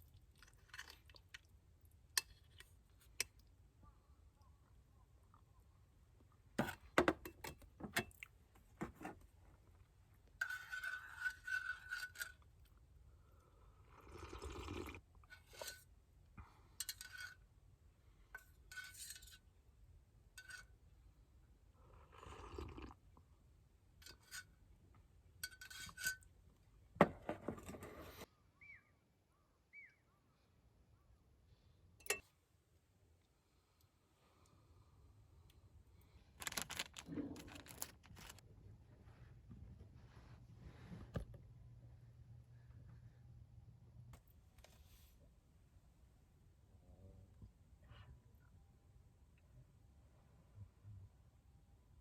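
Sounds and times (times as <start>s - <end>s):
tableware clinking and scraping: 36.4s - 38.4s.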